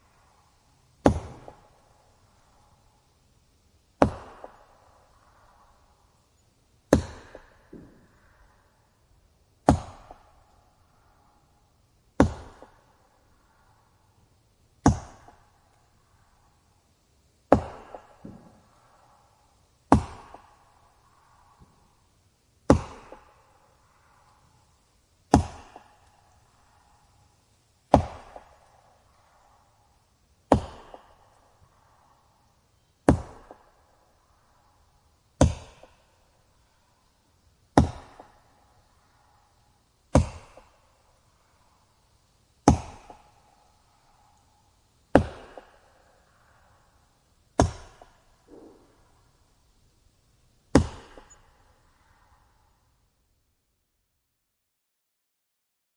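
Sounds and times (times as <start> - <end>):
axe striking wood: 1.0 - 1.6, 4.0 - 4.6, 6.9 - 7.8, 9.7 - 10.2, 12.2 - 12.8, 14.8 - 15.4, 17.5 - 18.6, 19.9 - 20.6, 22.7 - 23.3, 25.3 - 26.0, 27.9 - 28.6, 30.5 - 31.2, 33.1 - 33.6, 35.4 - 35.9, 37.8 - 38.4, 40.2 - 40.7, 42.6 - 43.4, 45.1 - 45.8, 47.6 - 48.8, 50.7 - 51.4.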